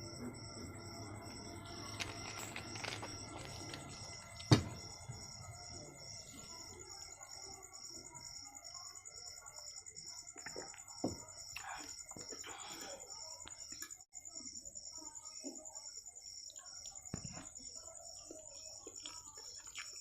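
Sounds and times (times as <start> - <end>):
insect chirping: 0.0 - 20.0
sharp knock: 4.4 - 5.2.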